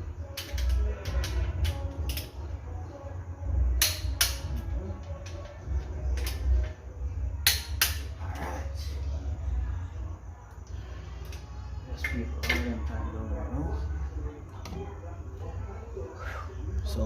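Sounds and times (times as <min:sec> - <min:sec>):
steady low hum: 0:00.0 - 0:17.0
sharp metallic tool clicks: 0:03.8 - 0:04.6, 0:07.4 - 0:08.1.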